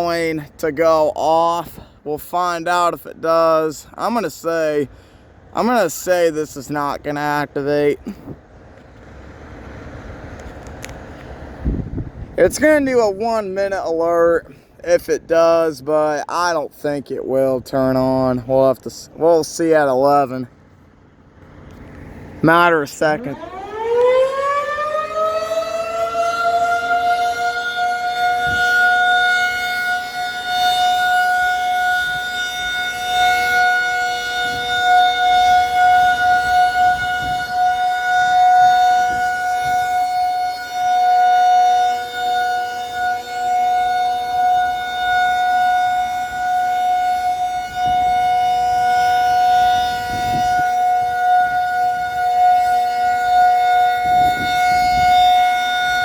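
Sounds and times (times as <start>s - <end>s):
outdoor warning siren steady tone: 20.5s - 56.0s.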